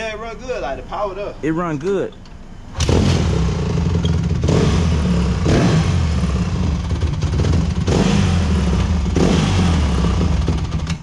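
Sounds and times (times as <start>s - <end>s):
motorcycle engine surging: 2.7s - 11.0s.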